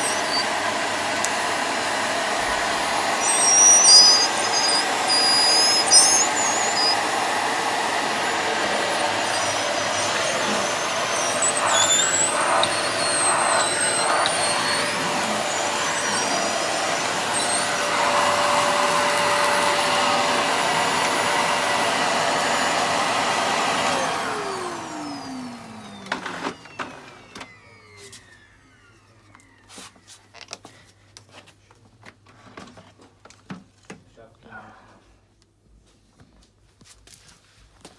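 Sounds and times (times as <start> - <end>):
high whistles: 0.0 - 0.8, 2.5 - 30.0
motor winding down: 0.0 - 29.7
vacuum cleaner running: 0.0 - 30.2.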